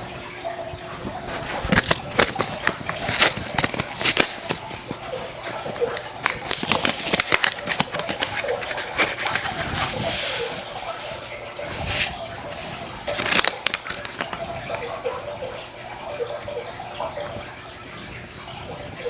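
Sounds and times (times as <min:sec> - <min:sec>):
hands handling plastic trays: 0:01.4 - 0:14.8.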